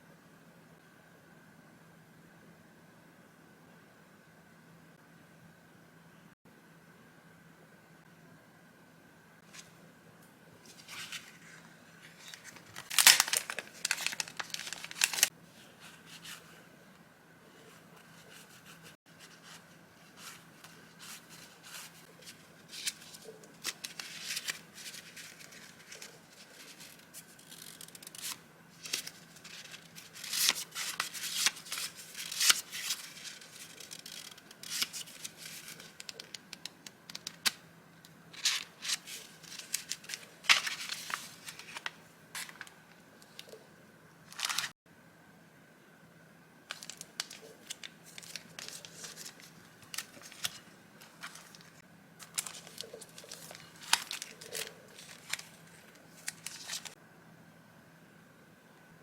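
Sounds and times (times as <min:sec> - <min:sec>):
faint steady hum: 0:00.0 - 0:59.0
paper rustling and crinkling: 0:10.6 - 0:16.6, 0:17.5 - 0:36.4, 0:38.3 - 0:42.7, 0:44.3 - 0:44.8, 0:46.7 - 0:57.0.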